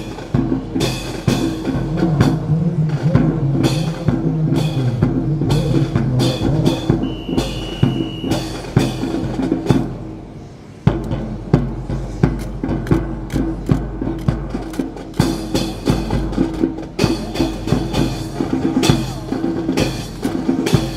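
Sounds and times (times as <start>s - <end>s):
music with driving drum beat: 0.0s - 10.3s, 10.9s - 20.9s
held high note: 5.4s - 9.1s.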